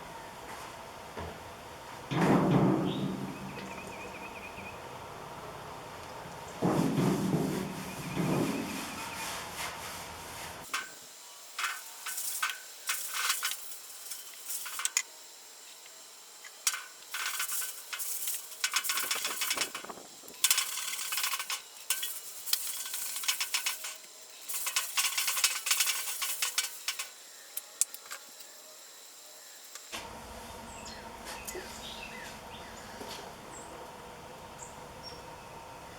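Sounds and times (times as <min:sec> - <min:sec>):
scrubbing on metal: 0:06.6 - 0:11.0, 0:11.6 - 0:15.0, 0:16.4 - 0:28.4.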